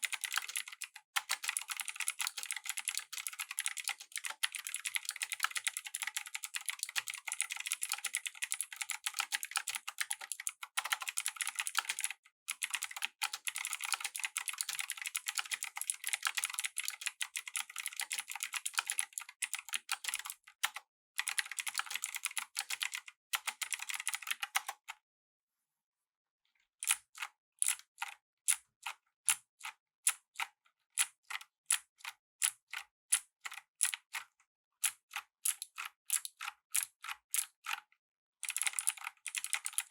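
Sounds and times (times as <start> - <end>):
rapid clicky keyboard typing: 0.0 - 24.8, 38.4 - 39.9.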